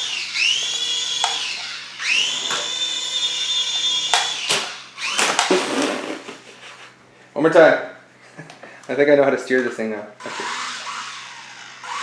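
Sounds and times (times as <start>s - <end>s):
toy helicopter rotor motors whining: 0.0s - 6.8s, 10.2s - 12.0s.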